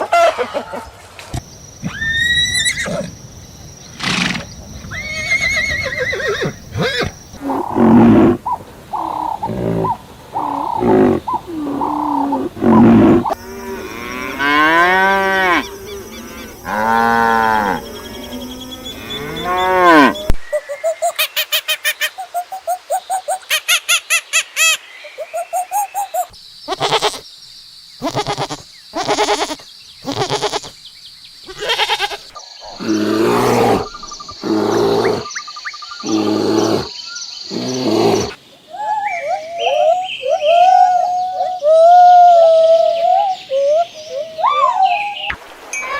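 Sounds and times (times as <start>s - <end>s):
rapid pulsed animal calls: 3.9s - 13.8s
pitched arching animal calls: 4.0s - 20.3s, 31.5s - 45.2s.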